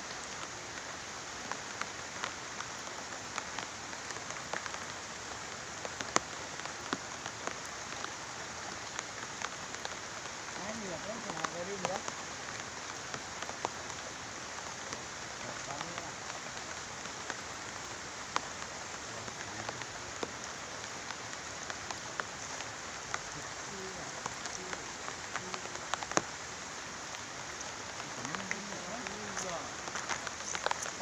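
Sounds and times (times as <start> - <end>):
raindrops tapping close by: 0.0 - 31.0
steady rain hissing: 0.0 - 31.0.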